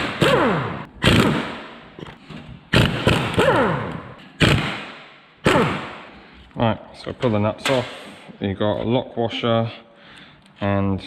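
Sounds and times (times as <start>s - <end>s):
impact wrench whining: 0.0s - 6.2s.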